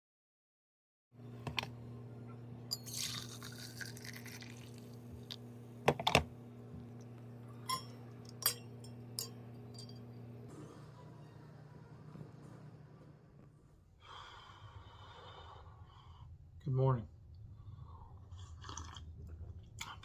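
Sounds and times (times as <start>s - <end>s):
low electrical hum: 1.2s - 20.0s.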